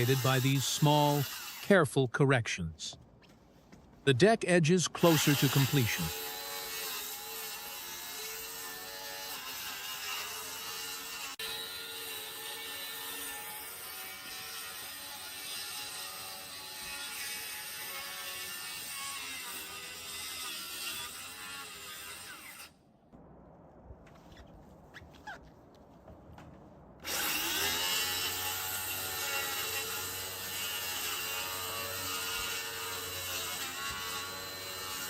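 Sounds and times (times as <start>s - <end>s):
power tool whirring: 0.0s - 1.7s.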